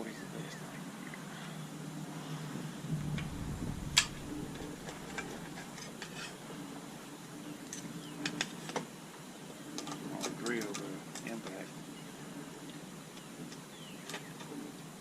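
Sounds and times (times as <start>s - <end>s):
steady low hum: 2.7s - 6.6s.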